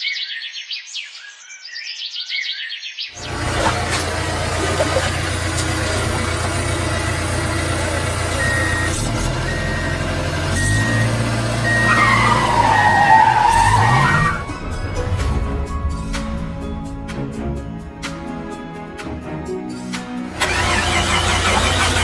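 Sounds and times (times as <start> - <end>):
vehicle engine droning: 3.2 - 19.4, 20.2 - 22.0
squeal dipping in pitch: 10.6 - 14.7.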